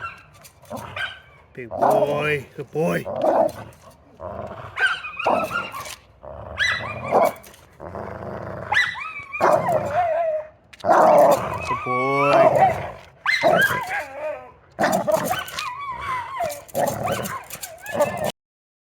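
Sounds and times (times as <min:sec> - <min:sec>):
big dog wavering calls: 0:04.6 - 0:07.6, 0:08.6 - 0:18.3.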